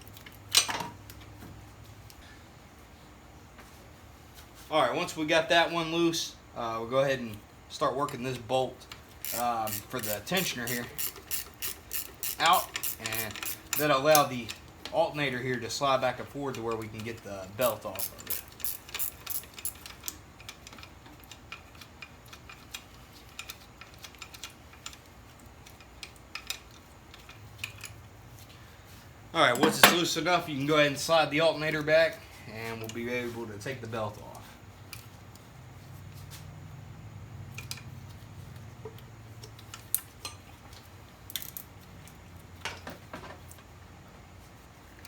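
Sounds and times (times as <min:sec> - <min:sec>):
ratchet wrench clicking: 0:09.2 - 0:14.6, 0:16.7 - 0:28.0, 0:41.3 - 0:41.6
metal tool taps: 0:29.6 - 0:30.1.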